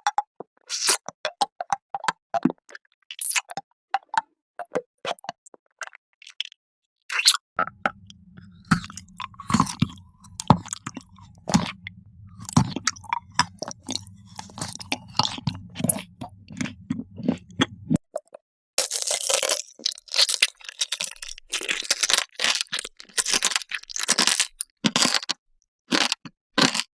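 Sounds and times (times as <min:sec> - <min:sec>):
crunching and chewing crisp food: 0:00.1 - 0:26.9
low hum: 0:07.6 - 0:18.0.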